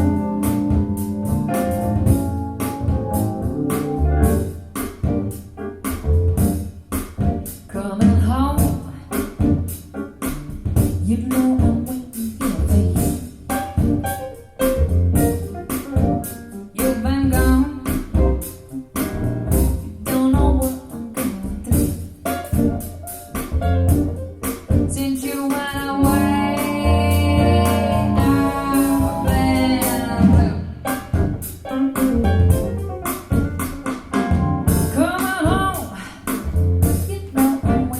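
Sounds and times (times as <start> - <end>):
song with singing and guitar: 10.8 - 14.0, 16.0 - 18.3, 19.7 - 22.7, 24.6 - 32.7, 34.7 - 37.9.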